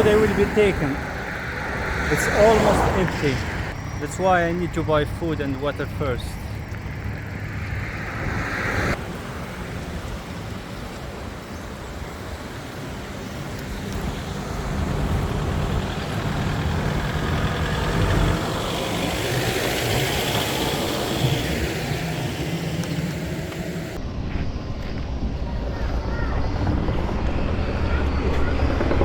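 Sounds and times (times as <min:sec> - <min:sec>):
vehicle engine running: 0:12.0 - 0:24.0.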